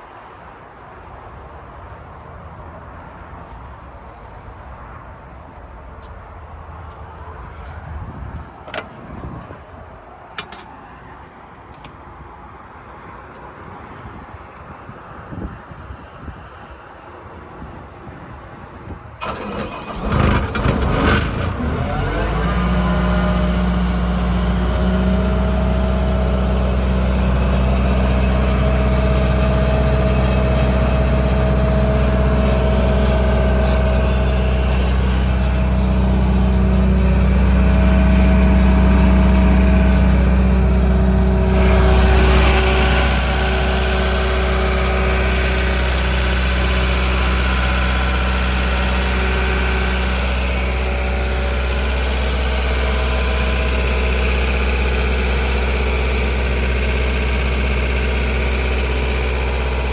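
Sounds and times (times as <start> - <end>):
diesel engine running: 8.6 - 9.6, 19.2 - 59.9.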